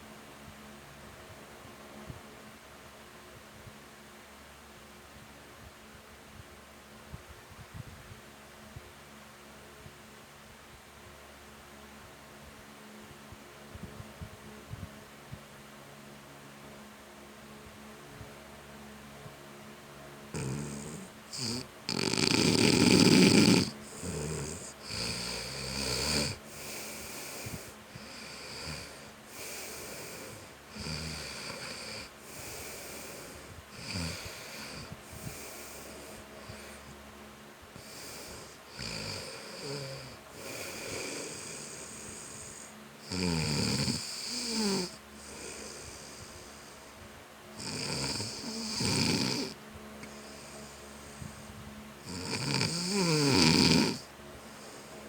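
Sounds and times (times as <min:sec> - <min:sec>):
man snoring: 0:20.3 - 0:36.9, 0:37.8 - 0:46.8, 0:47.6 - 0:51.3, 0:52.0 - 0:54.9.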